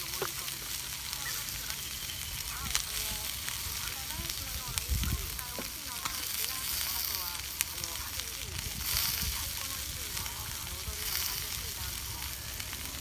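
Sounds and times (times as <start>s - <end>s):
chicken sizzling in a frying pan: 0.0s - 13.0s.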